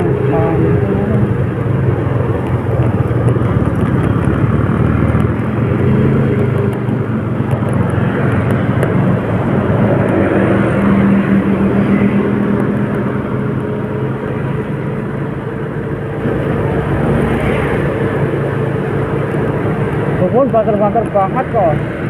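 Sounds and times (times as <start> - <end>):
vehicle engine and road noise: 0.0 - 22.0.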